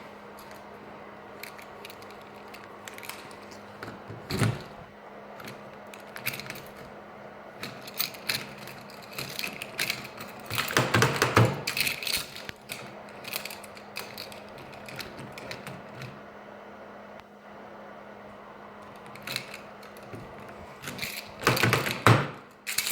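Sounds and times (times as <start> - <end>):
faint steady hum: 0.0 - 22.9
mechanical clicks and rattles: 7.6 - 16.2.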